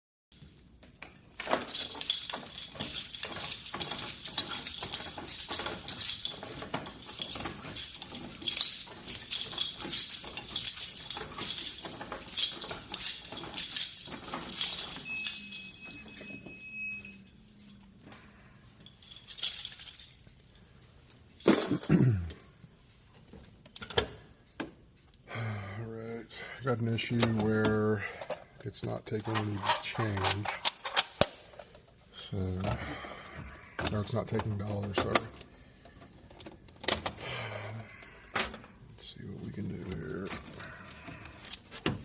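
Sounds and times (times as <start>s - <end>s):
small hard objects clinking: 1.4s - 16.1s.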